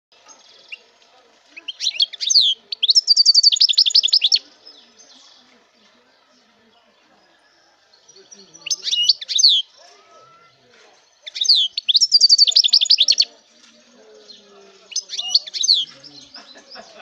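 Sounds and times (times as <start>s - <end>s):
songbird singing: 0.1s - 17.0s.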